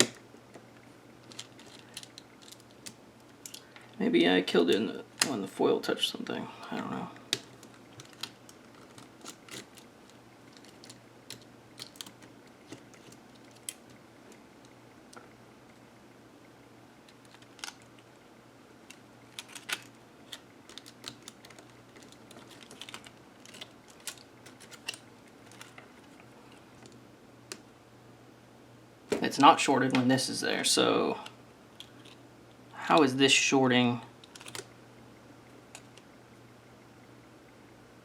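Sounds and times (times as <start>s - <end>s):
faint low hum: 0.0s - 38.0s
small parts clicking and tapping: 1.2s - 4.0s, 7.2s - 15.2s, 17.0s - 18.1s, 18.8s - 26.2s, 34.2s - 34.7s.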